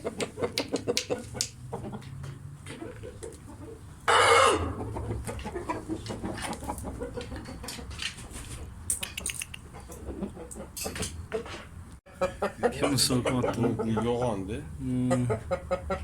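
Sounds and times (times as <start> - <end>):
rooster clucking: 0.0 - 16.0
rooster calling: 4.0 - 4.9.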